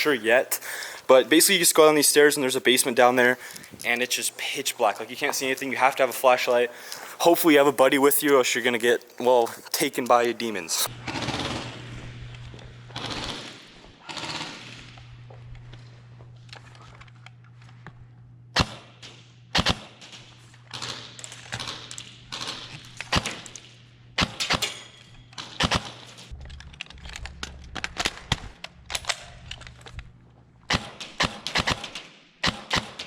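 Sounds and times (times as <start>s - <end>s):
steady low hum: 2.1s - 32.7s
airsoft guns firing: 12.9s - 14.9s, 18.6s - 26.3s, 30.7s - 33.0s.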